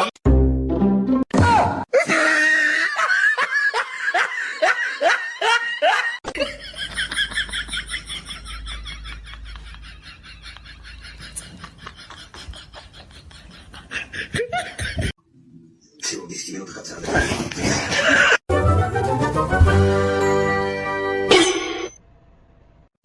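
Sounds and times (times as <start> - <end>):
person laughing hard: 1.9 - 15.1.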